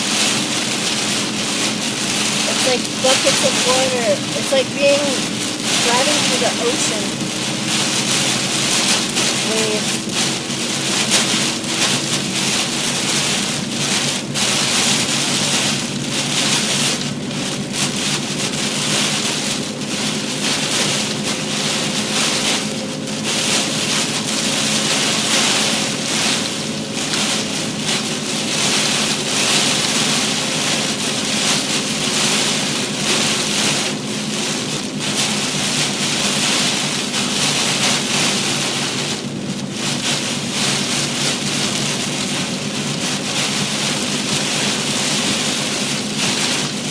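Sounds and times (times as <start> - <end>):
faint car hum: 0.0 - 12.2
torrential rain drumming on car roof: 0.0 - 46.9.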